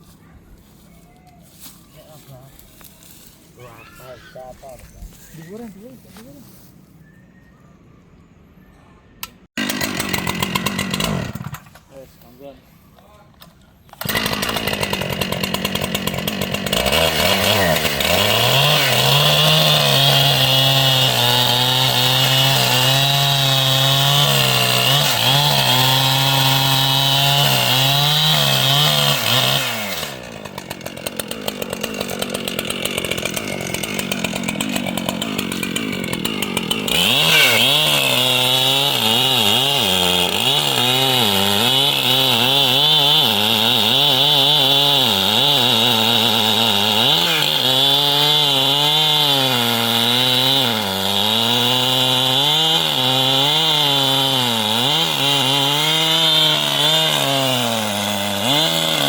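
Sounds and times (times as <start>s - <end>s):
chainsaw cutting: 1.5s - 6.7s, 9.2s - 59.0s.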